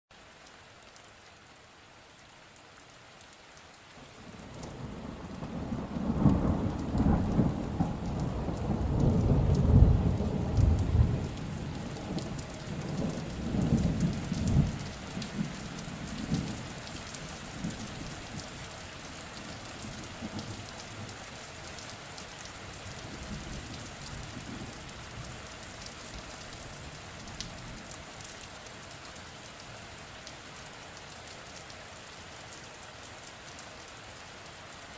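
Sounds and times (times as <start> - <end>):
steady rain falling: 0.1 - 34.9
rolling rumble of thunder: 4.3 - 18.5, 19.4 - 21.1.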